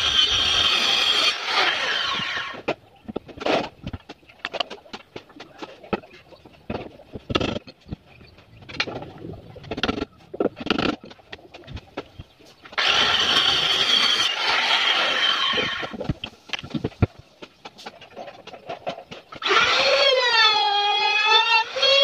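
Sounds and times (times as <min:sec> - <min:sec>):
power tool whining: 0:00.0 - 0:02.6, 0:12.8 - 0:16.0, 0:19.4 - 0:22.0.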